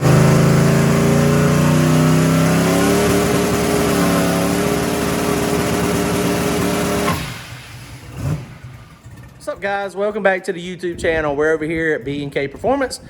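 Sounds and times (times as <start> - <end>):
turbocharged engine running loud: 0.0 - 9.6.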